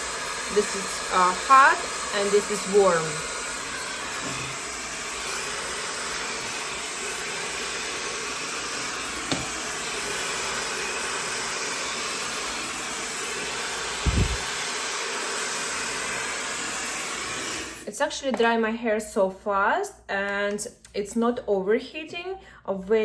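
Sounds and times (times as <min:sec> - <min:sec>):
hair dryer blowing air: 0:00.0 - 0:17.9
low thump: 0:14.1 - 0:14.4.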